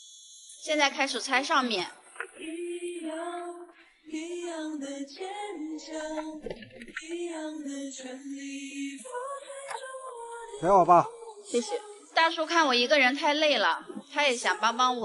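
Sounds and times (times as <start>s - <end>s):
woman singing slow melody: 1.6s - 6.4s, 7.0s - 12.4s.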